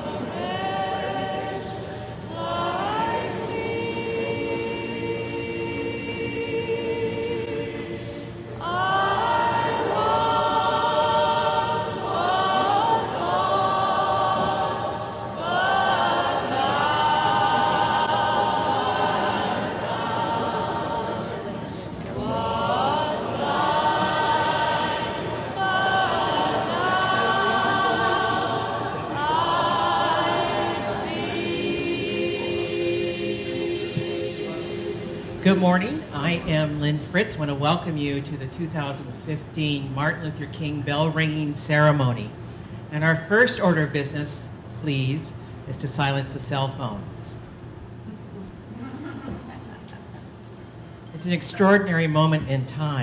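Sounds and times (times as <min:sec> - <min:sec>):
choir singing unaccompanied: 0:00.0 - 0:36.7.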